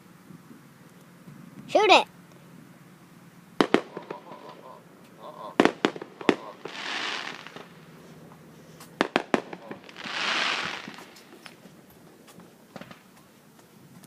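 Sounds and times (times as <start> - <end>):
fireworks bangs: 3.6 - 4.8, 5.5 - 13.2
fireworks hissing: 5.5 - 13.2.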